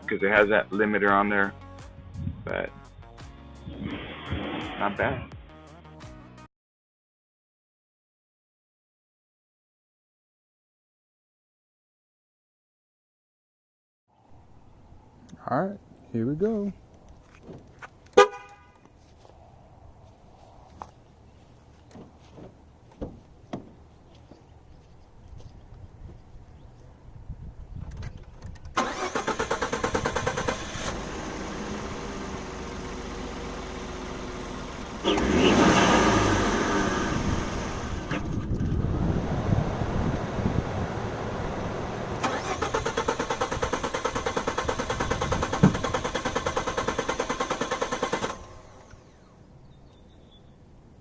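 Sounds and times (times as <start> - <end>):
thump: 21.9 - 23.7
starter motor cranking: 28.7 - 32.3, 42.2 - 49.2
engine idling: 28.8 - 38.3.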